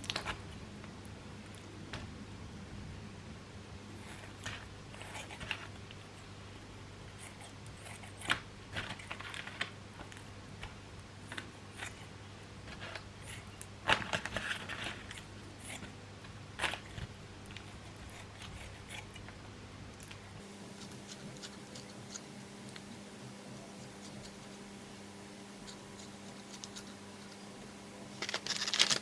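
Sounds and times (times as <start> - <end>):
low steady hum: 20.4 - 29.0.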